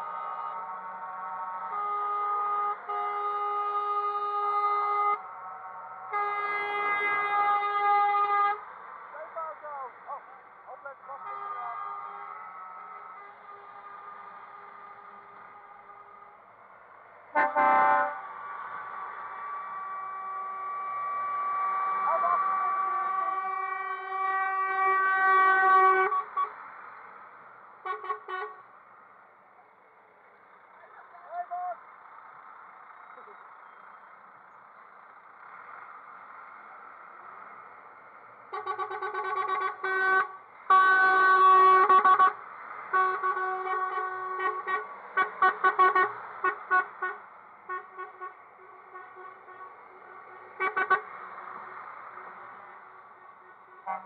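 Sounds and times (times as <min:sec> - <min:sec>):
truck horn blasts and toots: 0:00.0 - 0:05.2, 0:06.1 - 0:08.7, 0:11.2 - 0:15.4, 0:17.3 - 0:18.4, 0:19.5 - 0:26.6, 0:27.8 - 0:28.7, 0:38.5 - 0:51.7, 0:53.3 - 0:54.0.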